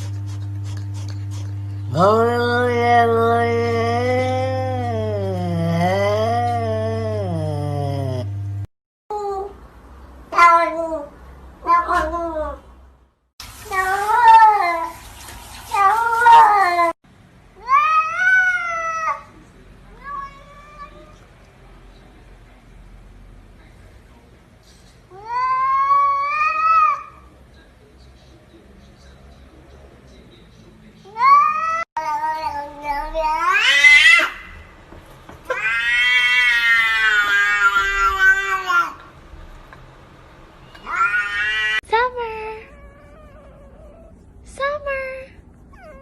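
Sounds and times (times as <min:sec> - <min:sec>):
cat meowing: 0:10.3 - 0:12.6, 0:31.1 - 0:34.5, 0:35.5 - 0:39.0, 0:40.8 - 0:41.8.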